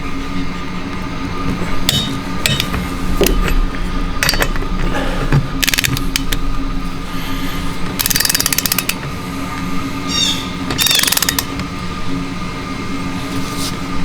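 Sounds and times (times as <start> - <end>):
ratchet wrench clicking: 5.6 - 6.4, 8.0 - 9.0, 10.8 - 11.6.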